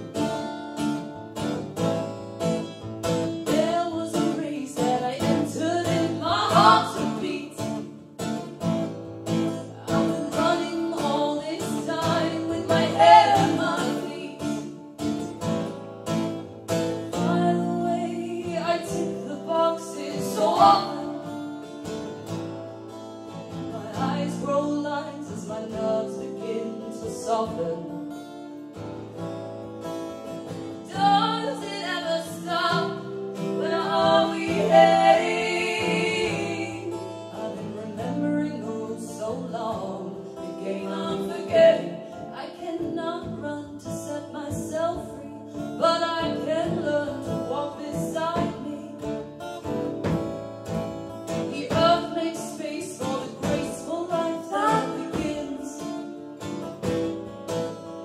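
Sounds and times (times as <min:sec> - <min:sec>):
strummed acoustic guitar: 0:00.0 - 0:58.0
person singing: 0:09.6 - 0:14.7, 0:17.2 - 0:21.2, 0:33.6 - 0:49.0, 0:51.5 - 0:55.9.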